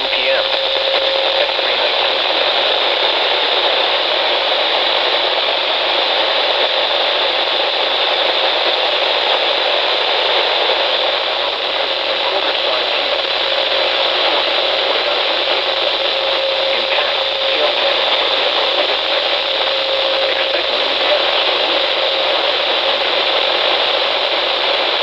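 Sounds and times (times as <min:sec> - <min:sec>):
faint steady tone: 0:00.0 - 0:03.6, 0:11.3 - 0:25.0
radio static hiss: 0:00.0 - 0:25.0.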